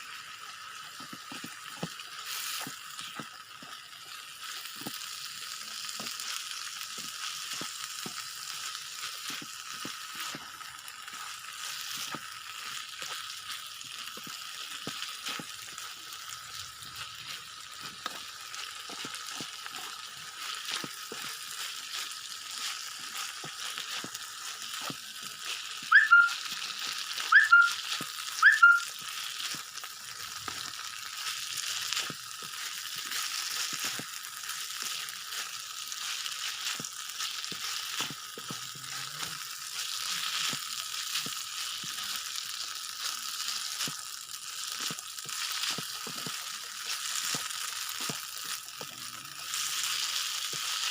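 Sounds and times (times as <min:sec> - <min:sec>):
rice sizzling in a pan: 0:00.0 - 0:50.9
short rising chirps: 0:25.9 - 0:26.4, 0:27.3 - 0:27.8, 0:28.4 - 0:28.9.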